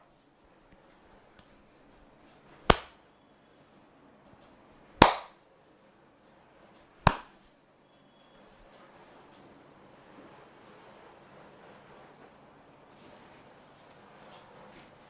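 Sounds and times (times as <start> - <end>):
hand smacks: 2.7 - 3.0, 5.0 - 5.4, 7.0 - 7.4.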